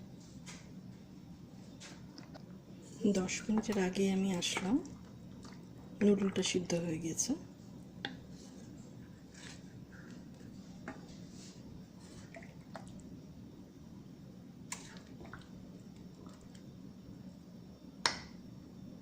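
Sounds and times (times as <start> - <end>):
soup simmering in a pot: 3.3 - 6.7, 7.4 - 18.2.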